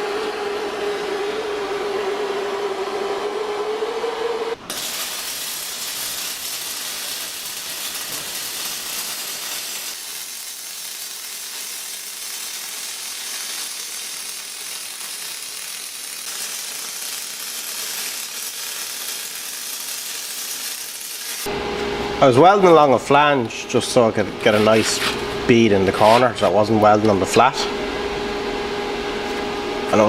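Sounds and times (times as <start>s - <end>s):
welder crackling hiss: 4.6s - 21.5s.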